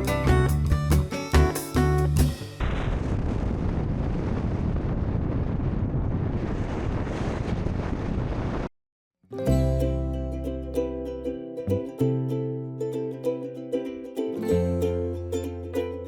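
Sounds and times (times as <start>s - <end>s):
plucked guitar music: 0.0s - 2.6s, 9.3s - 16.0s
wind buffeting microphone: 2.6s - 8.7s.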